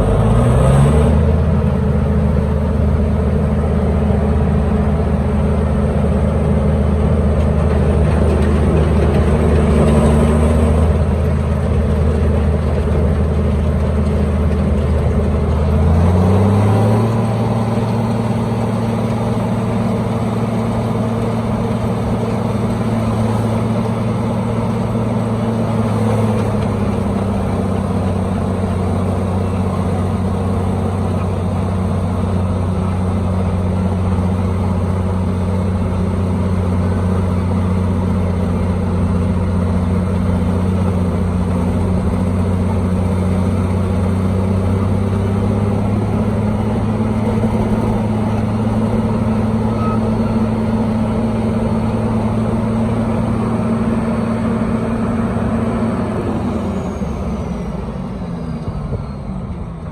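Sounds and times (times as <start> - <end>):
machinery engine running: 0.0 - 59.9.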